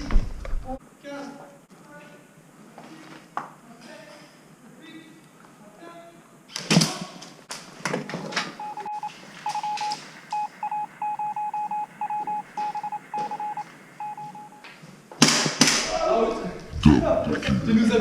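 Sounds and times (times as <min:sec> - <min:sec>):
short electronic beeps: 0:08.6 - 0:14.6.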